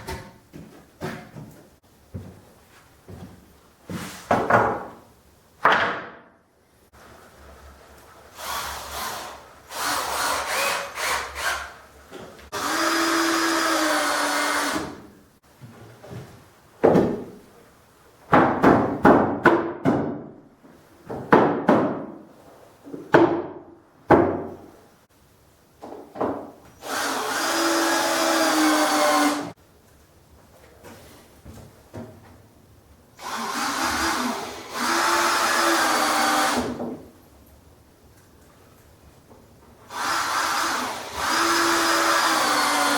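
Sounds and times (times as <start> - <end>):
sharp knocks on wood: 5.6 - 6.3.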